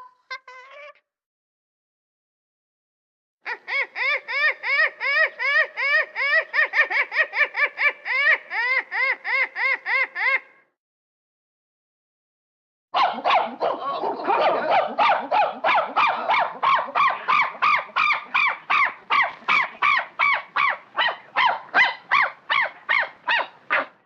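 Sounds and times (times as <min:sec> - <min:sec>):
monkey calling: 0:03.5 - 0:10.5, 0:13.0 - 0:24.0.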